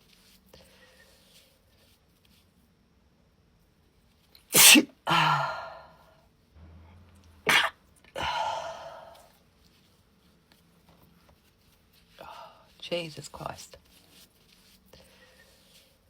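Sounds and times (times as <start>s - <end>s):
woman sneezing: 4.5s - 5.9s, 7.5s - 9.2s.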